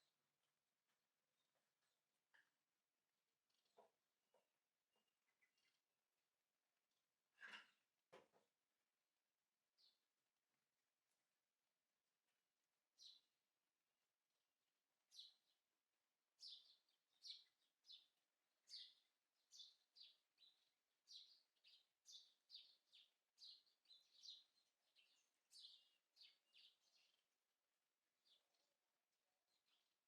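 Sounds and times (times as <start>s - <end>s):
small bird chirping: 16.4s - 27.3s.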